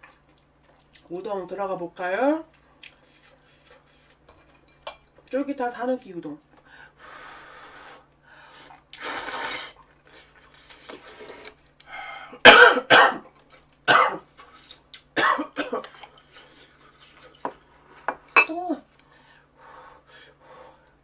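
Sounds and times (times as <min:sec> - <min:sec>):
person coughing: 0:12.4 - 0:13.2, 0:13.9 - 0:14.2, 0:15.2 - 0:15.9.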